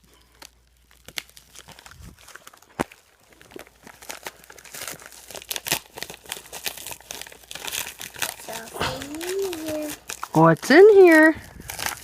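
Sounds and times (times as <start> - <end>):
packaging crinkling and tearing: 0.0 - 12.0.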